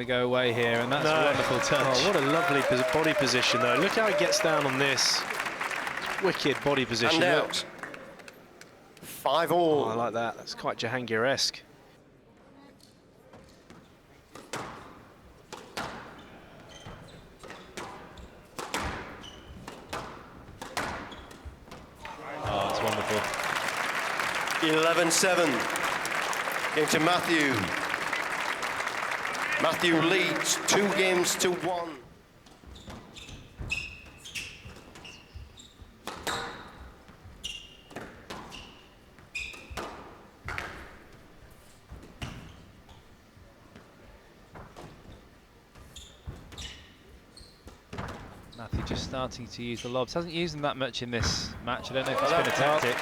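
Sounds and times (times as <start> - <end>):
shoes squeaking on court floor: 0.6 - 7.8, 13.3 - 43.9, 44.5 - 48.9.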